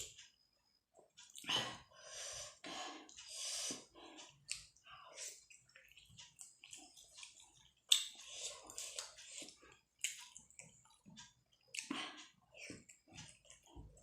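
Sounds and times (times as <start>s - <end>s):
close chewing sounds: 3.8s - 14.0s.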